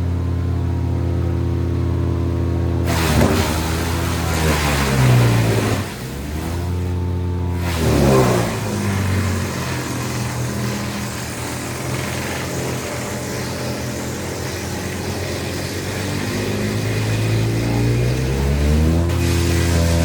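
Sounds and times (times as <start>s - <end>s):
wood chipper engine running: 0.0s - 20.0s
crackle of wood being chipped: 7.6s - 18.4s.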